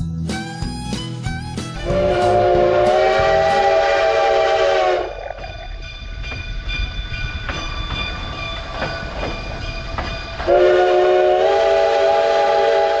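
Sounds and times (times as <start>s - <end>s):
steam locomotive whistle: 1.8s - 5.3s, 10.4s - 13.0s
train wheels clicking on rails: 1.9s - 13.0s
thin high ringing: 5.1s - 10.6s.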